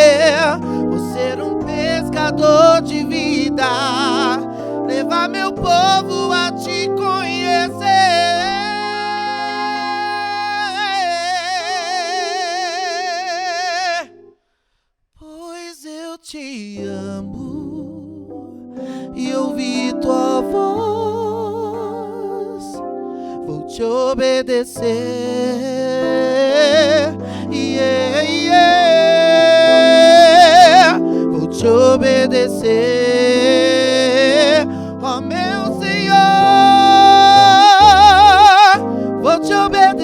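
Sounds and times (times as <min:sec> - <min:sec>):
sustained instrumental chords: 0:00.0 - 0:12.4, 0:26.2 - 0:40.0
person singing a long note: 0:00.0 - 0:14.2, 0:26.1 - 0:40.0.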